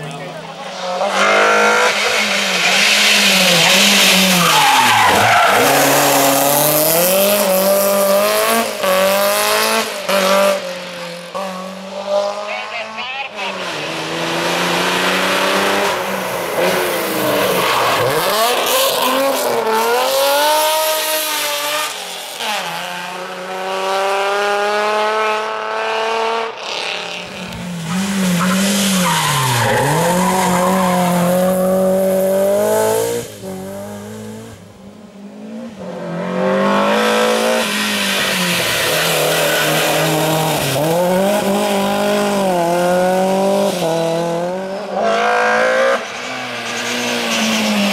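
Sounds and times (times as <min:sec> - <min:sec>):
rally car engine revving: 0:00.0 - 0:47.9.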